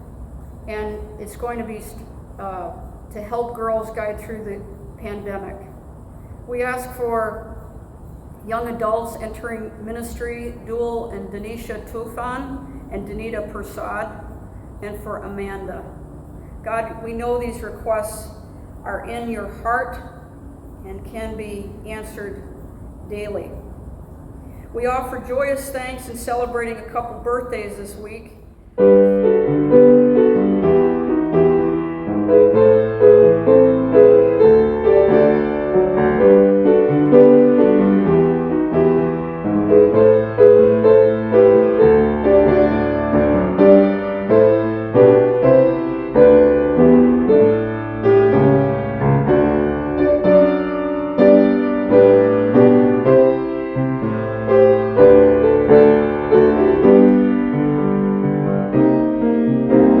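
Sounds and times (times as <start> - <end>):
solo piano music: 28.8 - 60.0.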